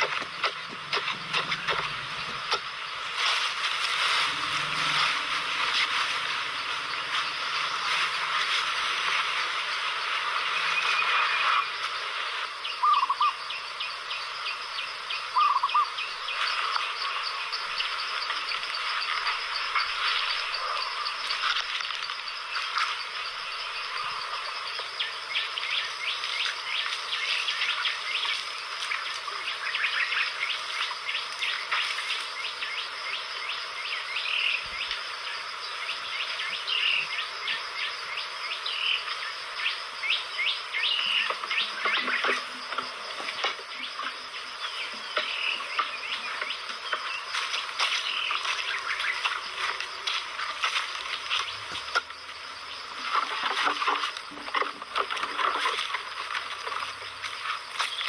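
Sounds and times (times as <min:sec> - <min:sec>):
short loud chirping calls: 0:00.0 - 0:03.2
animals trilling and clicking: 0:00.0 - 0:09.8.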